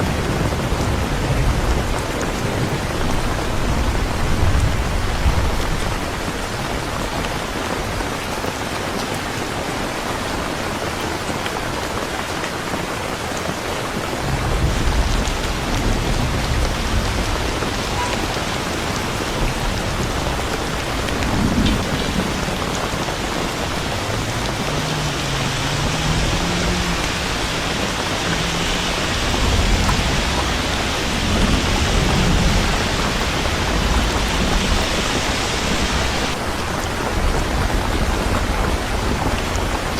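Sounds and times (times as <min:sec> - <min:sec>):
rain falling: 0:00.0 - 0:39.9
thunder rumbling: 0:14.2 - 0:39.9.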